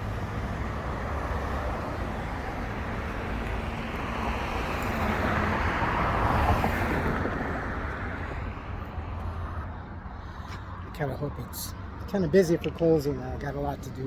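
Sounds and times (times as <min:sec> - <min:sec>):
road traffic rush: 0:00.0 - 0:14.0.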